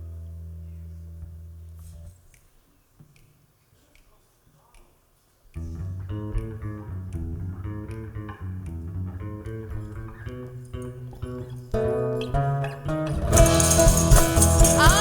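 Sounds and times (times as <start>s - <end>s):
bass line: 0.0s - 2.1s, 5.6s - 11.6s, 13.0s - 15.0s
rhythmic guitar chords: 5.6s - 15.0s.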